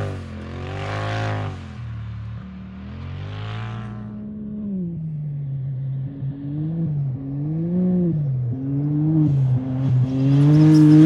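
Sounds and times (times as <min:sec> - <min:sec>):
race vehicle engine revving: 0:00.0 - 0:01.6.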